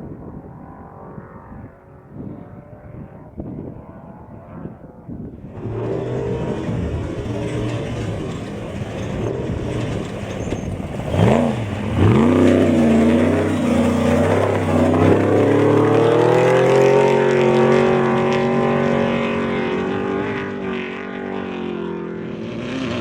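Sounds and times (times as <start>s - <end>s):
race truck engine revving: 5.5s - 23.0s.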